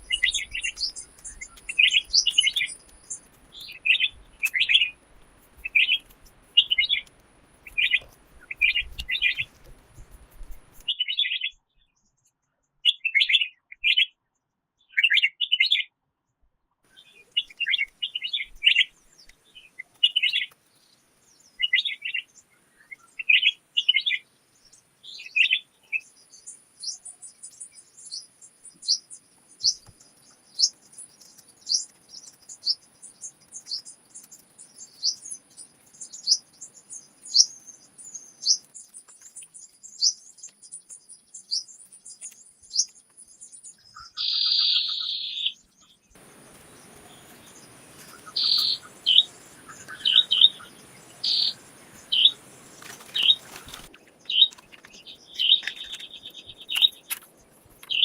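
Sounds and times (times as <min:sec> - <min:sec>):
faint steady hiss: 0:00.0 - 0:10.9, 0:46.1 - 0:58.0
small birds chirping: 0:00.0 - 0:14.2, 0:16.9 - 0:58.0
harsh bird call: 0:48.0 - 0:54.5.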